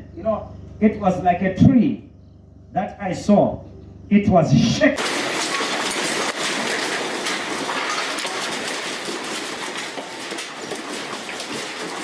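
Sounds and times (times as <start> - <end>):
loose objects rattling: 4.8 - 12.0.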